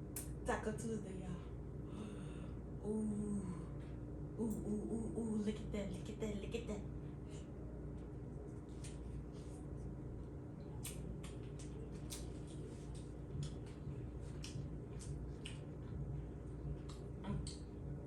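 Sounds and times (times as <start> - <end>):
low steady hum: 0.0 - 18.0
wet chewing and mouth sounds: 10.7 - 17.8.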